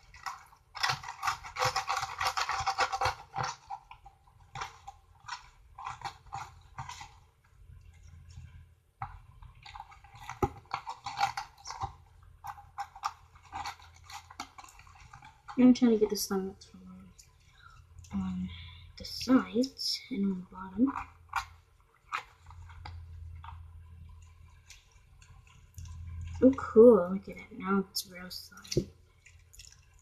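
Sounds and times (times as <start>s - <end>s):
slime scraped around a bowl: 0.0s - 7.2s
slime squelching: 0.0s - 30.0s.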